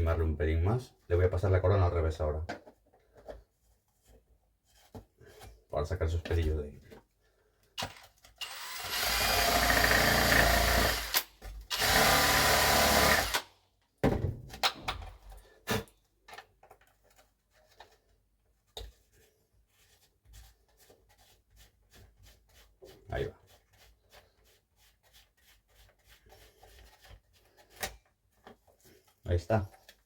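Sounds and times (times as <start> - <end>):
drill with hole saw: 7.8 - 13.5.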